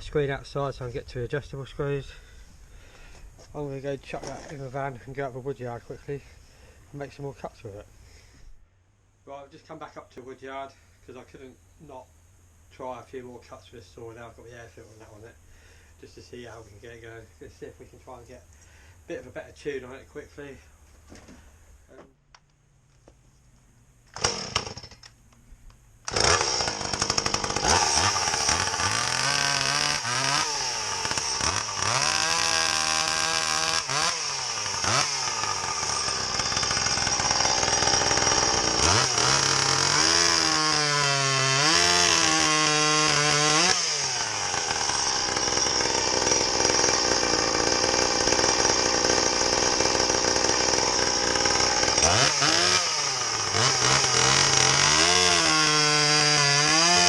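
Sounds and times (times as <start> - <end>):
chainsaw revving: 24.2 - 24.9, 26.1 - 57.0.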